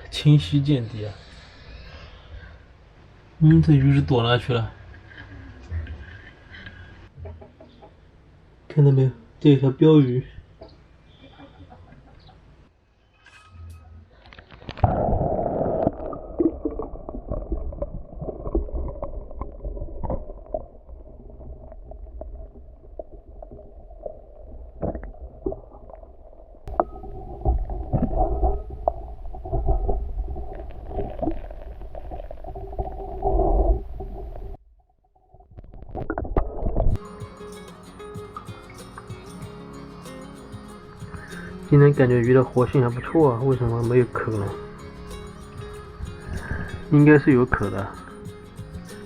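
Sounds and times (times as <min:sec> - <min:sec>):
muffled water gurgling: 0:14.8 - 0:37.0.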